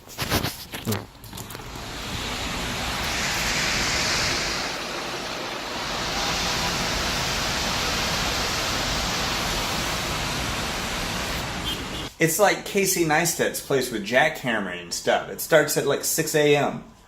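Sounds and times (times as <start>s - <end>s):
distant traffic: 1.5s - 12.1s.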